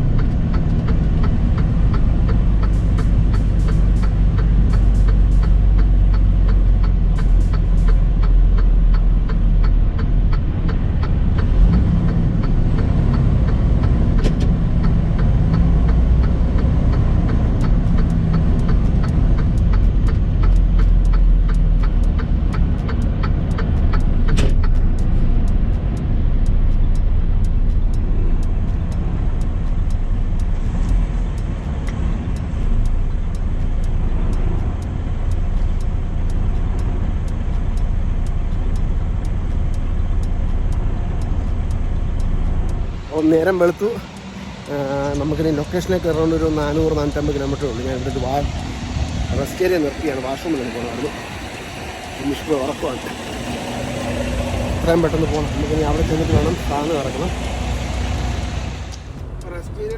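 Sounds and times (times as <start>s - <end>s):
faint regular ticking: 0.0s - 59.9s
truck engine and road rumble: 0.0s - 59.9s
sharp click: 0.1s - 37.5s, 40.2s - 59.5s.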